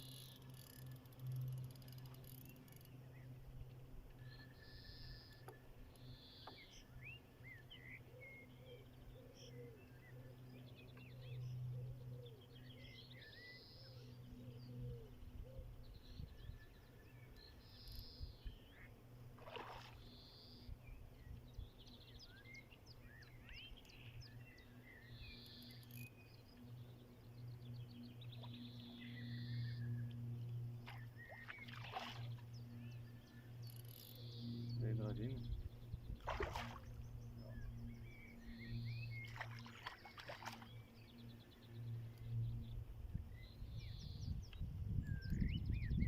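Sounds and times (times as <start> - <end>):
steady low hum: 0.0 - 46.0
birds singing and chirping: 19.6 - 46.0.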